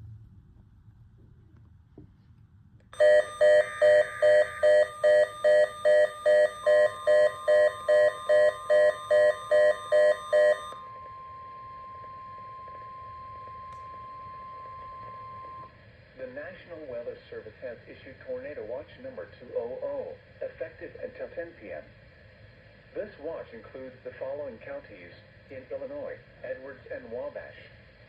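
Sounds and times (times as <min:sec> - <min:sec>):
electronic alarm beeping: 0:03.0 - 0:15.7.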